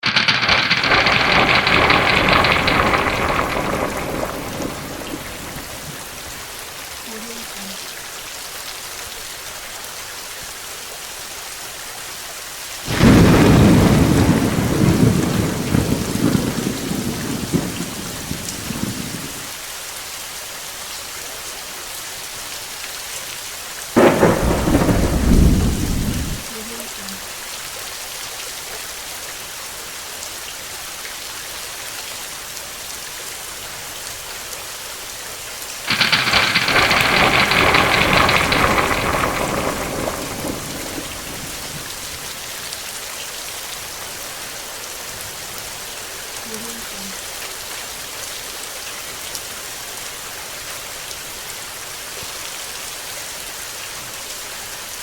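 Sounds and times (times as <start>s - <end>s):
thunder rumbling: 0.0s - 7.7s, 12.8s - 19.5s, 24.0s - 27.2s, 35.9s - 42.8s
steady rain falling: 0.0s - 55.0s.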